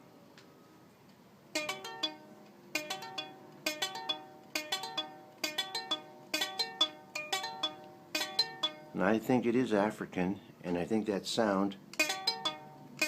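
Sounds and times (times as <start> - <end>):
plucked nylon string notes: 1.6 - 9.0, 12.0 - 13.0.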